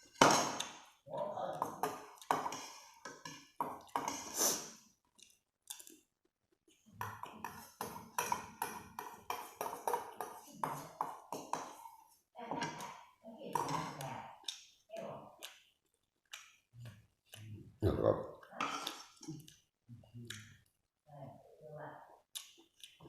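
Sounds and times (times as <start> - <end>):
chewing and mouth noises: 5.1 - 6.8, 15.4 - 17.6, 22.2 - 23.0.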